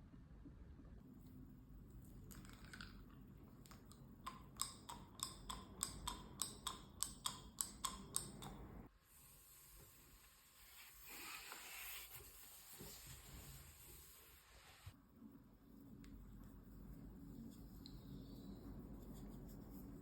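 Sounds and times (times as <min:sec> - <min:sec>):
faint low hum: 0:00.0 - 0:04.6.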